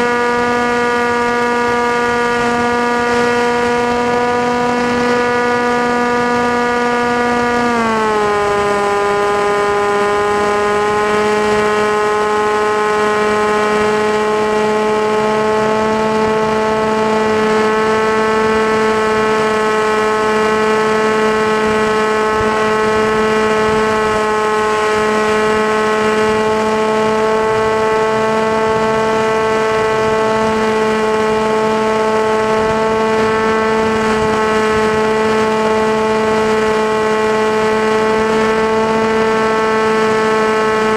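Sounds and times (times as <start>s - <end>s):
model aircraft motor whine: 0.0s - 40.9s.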